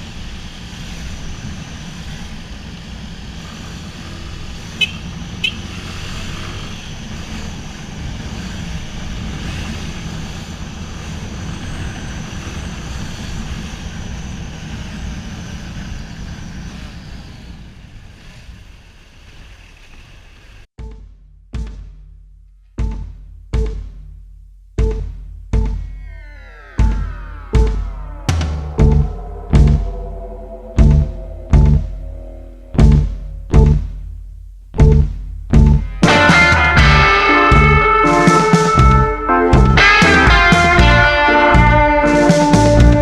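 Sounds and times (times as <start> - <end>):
traffic noise: 0.0 - 20.6, 26.3 - 34.7.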